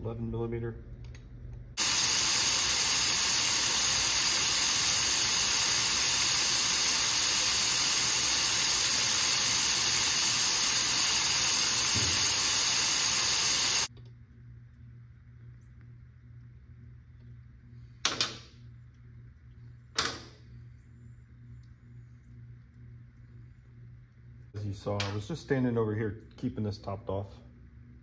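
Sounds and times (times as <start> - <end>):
brake bleeder air hiss: 1.8 - 13.9.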